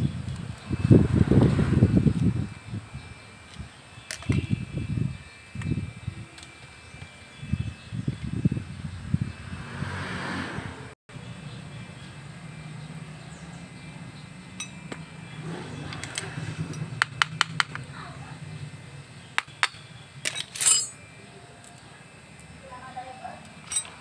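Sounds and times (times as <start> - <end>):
metallic clinks of tools: 14.6 - 15.0, 19.5 - 21.9, 23.5 - 24.0.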